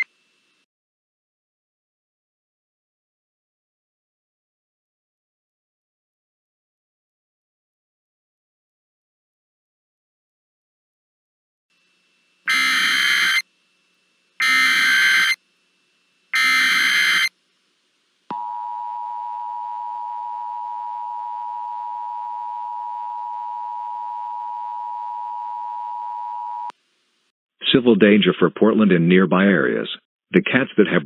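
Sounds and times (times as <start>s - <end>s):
data bursts: 12.5s - 13.4s, 14.4s - 15.4s, 16.3s - 17.3s
two-tone attention signal: 12.5s - 13.4s, 14.4s - 15.4s, 16.4s - 17.3s.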